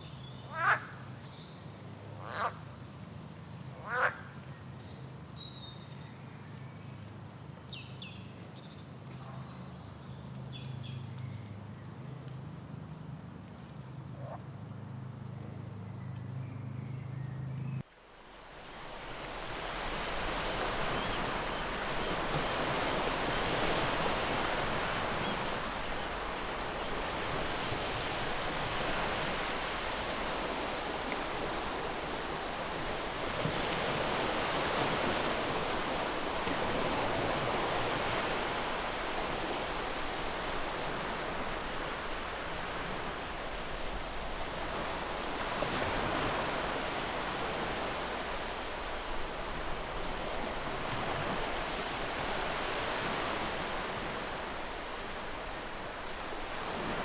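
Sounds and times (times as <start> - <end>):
ocean waves breaking: 18.2 - 57.0.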